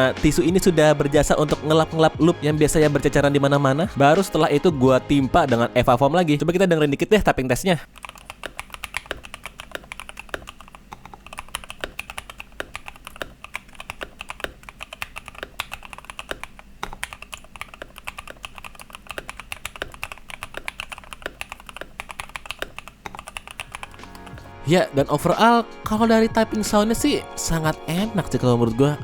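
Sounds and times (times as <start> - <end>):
fast mechanical keyboard typing: 7.9 - 24.4.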